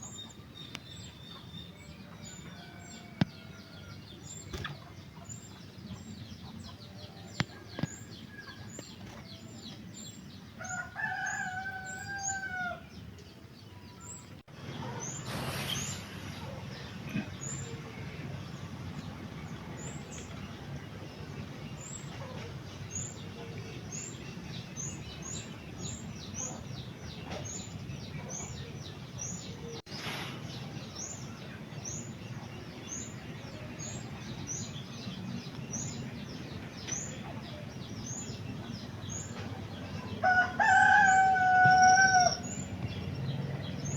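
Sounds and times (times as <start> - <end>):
rooster crowing: 1.8 - 4.2, 10.6 - 13.0, 40.2 - 42.6.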